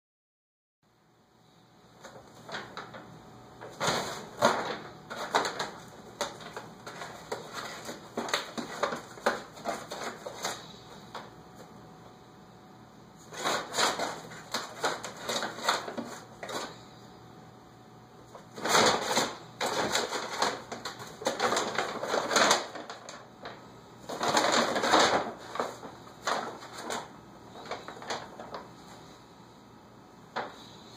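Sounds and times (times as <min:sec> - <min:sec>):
paper bag rustling and crackling: 0:02.0 - 0:11.3, 0:13.2 - 0:16.9, 0:18.3 - 0:29.2.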